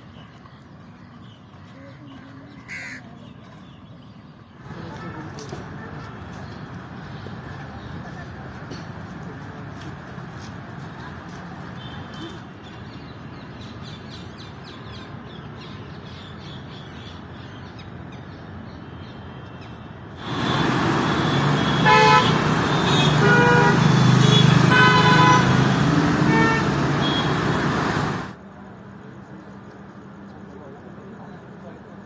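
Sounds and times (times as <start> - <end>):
road traffic engines: 0.0 - 32.0
car horn toots: 20.2 - 28.3.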